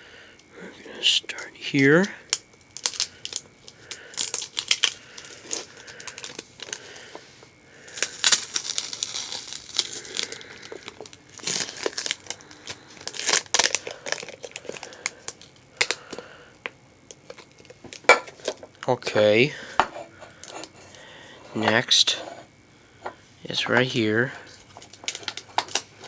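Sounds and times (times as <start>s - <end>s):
paper crinkling and tearing: 7.9s - 14.9s.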